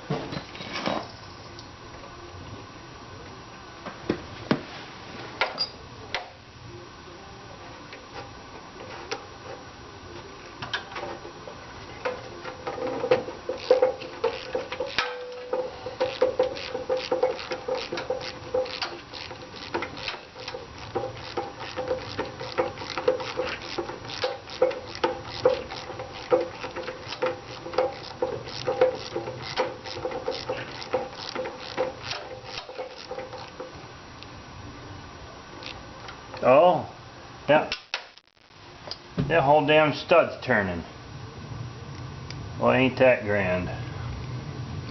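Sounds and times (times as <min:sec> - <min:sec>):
ratchet wrench clicking: 0:13.5 - 0:33.6.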